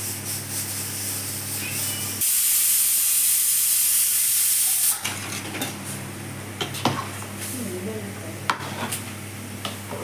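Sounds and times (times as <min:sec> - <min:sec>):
steam hissing from cooking pot: 0:00.0 - 0:05.0.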